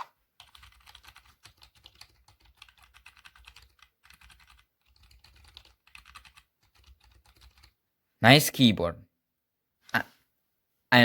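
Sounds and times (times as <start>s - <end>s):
fast keyboard keystrokes: 0.4s - 7.8s.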